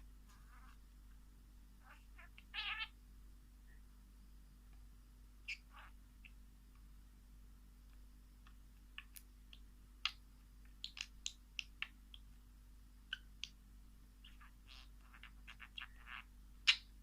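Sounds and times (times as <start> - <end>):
small birds chirping: 0.0 - 3.0, 3.6 - 6.9, 7.8 - 17.0.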